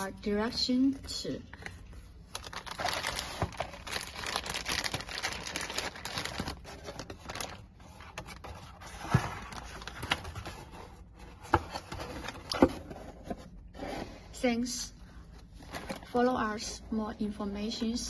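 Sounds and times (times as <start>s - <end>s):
plastic bags crinkling: 1.5s - 10.5s.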